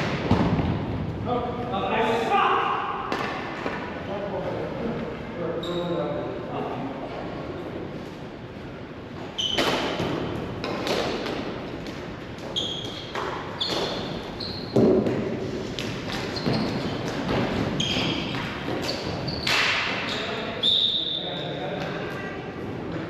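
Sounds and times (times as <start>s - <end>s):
hockey sticks and ball knocking: 9.4s - 20.1s
high squeaks: 12.6s - 14.8s, 17.8s - 21.2s.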